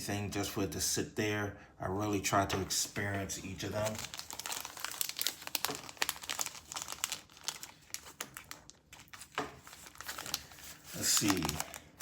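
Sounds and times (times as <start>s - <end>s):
plastic bags crinkling: 3.0s - 12.0s.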